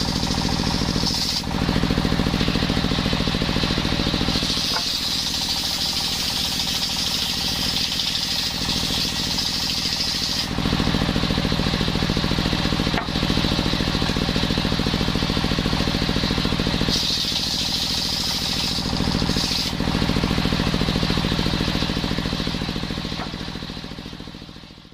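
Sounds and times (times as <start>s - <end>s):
saw blade cutting wood whine: 0.0s - 24.7s
circular saw running: 0.0s - 24.9s.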